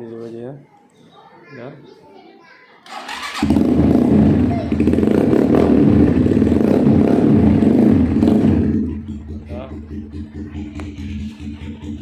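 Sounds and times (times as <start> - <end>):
motorcycle engine running: 3.1 - 12.0.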